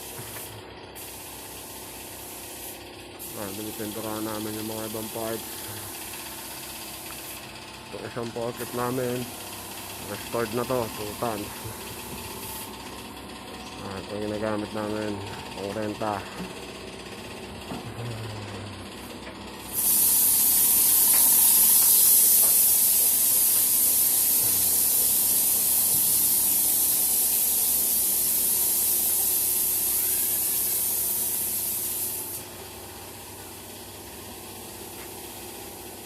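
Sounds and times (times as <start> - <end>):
compressed air spraying: 0.0 - 7.5, 8.4 - 12.8, 19.0 - 36.0.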